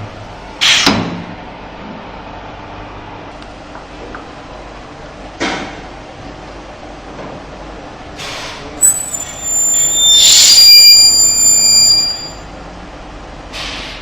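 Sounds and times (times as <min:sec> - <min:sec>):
friction welder spinning whine: 0:08.8 - 0:12.4.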